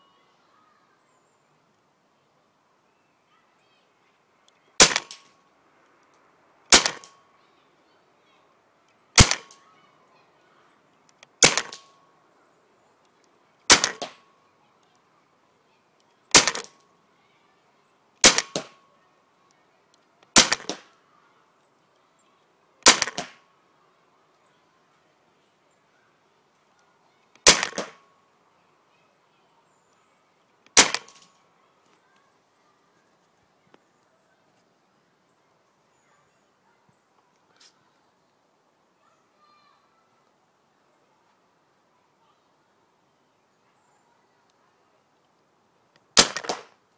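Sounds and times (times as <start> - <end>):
paintball marker shots popping: 4.8 - 5.3, 6.7 - 7.2, 9.2 - 9.6, 11.4 - 11.9, 13.7 - 14.2, 16.3 - 16.8, 18.2 - 18.8, 20.3 - 21.0, 22.8 - 23.4, 27.4 - 28.0, 30.7 - 31.3, 46.2 - 46.8.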